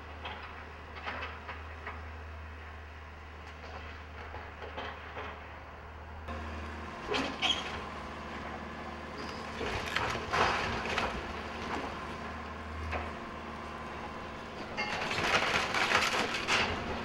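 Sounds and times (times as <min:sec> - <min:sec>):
heavy machinery engine hum: 0:00.0 - 0:17.0
debris clanking and scraping: 0:09.2 - 0:12.0, 0:14.5 - 0:17.0.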